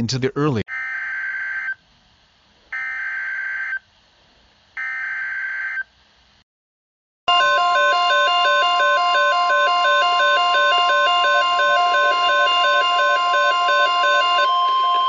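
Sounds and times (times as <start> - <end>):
loud steady alert tone: 7.3 - 15.0.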